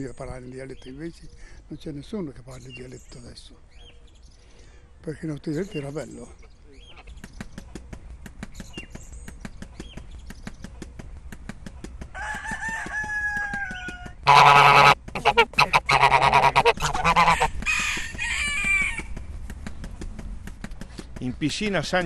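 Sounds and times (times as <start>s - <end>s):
fowl crowing and calling: 12.1s - 19.3s.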